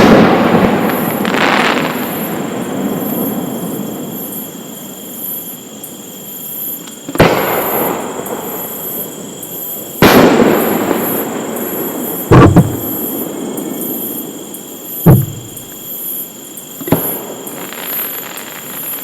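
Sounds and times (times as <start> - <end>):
fireworks booming: 12.2 - 13.5, 15.0 - 15.9.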